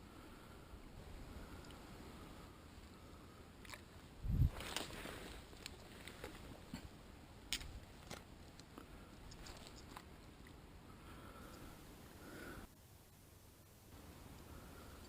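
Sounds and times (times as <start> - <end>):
handling clicks and rustles: 3.6 - 10.6.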